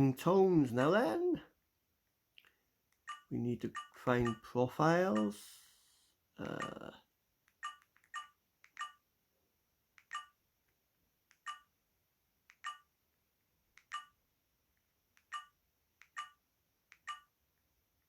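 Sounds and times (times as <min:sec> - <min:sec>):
phone key beeps: 0:03.1 - 0:04.4, 0:07.6 - 0:09.0, 0:10.0 - 0:10.4, 0:11.4 - 0:11.7, 0:12.5 - 0:12.9, 0:13.8 - 0:14.2, 0:15.2 - 0:16.4, 0:17.0 - 0:17.3.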